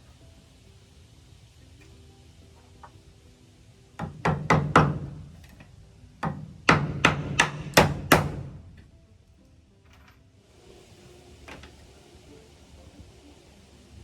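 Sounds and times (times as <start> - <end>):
hammer striking nails into wood: 4.0 - 5.2, 6.2 - 8.6.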